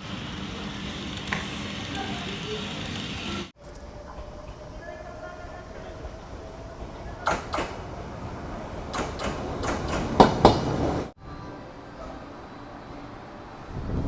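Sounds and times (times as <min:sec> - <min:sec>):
sharp knocks: 0:08.9 - 0:10.8.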